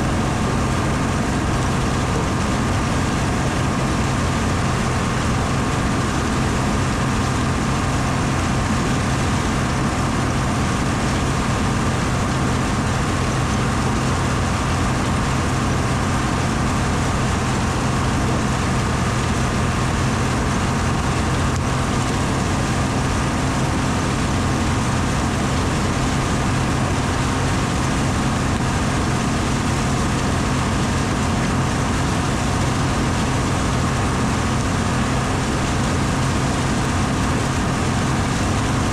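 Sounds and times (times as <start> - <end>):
diesel engine humming and whining: 0.0 - 38.9.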